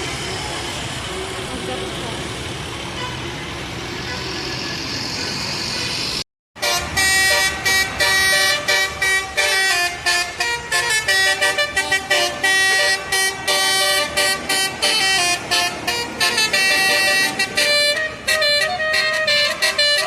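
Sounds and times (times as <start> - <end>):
bus horn playing a tune: 6.6 - 20.0.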